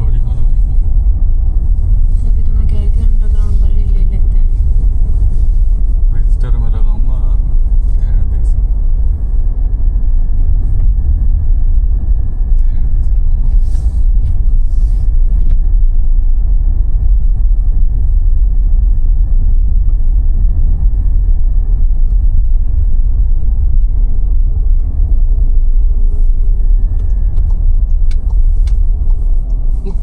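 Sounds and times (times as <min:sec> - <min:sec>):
car engine and road rumble: 0:00.0 - 0:30.0
faint thin whine: 0:17.2 - 0:30.0.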